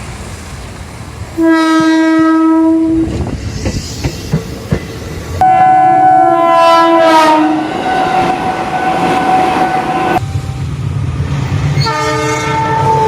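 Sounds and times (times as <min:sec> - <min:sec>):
train wheels on rail joints: 0:00.0 - 0:13.0
train horn blast: 0:01.4 - 0:03.1, 0:05.4 - 0:10.7, 0:11.8 - 0:13.0.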